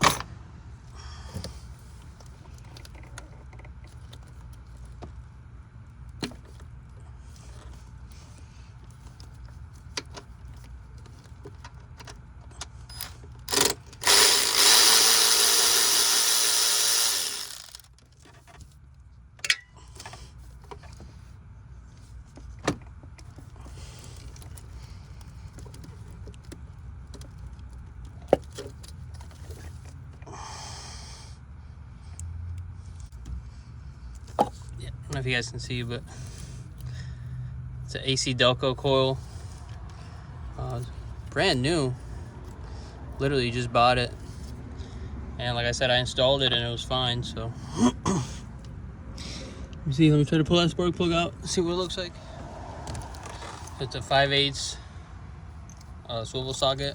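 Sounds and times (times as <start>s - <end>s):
engine running with rough misfire: 12.9s - 17.9s
loud whirring: 13.0s - 17.9s.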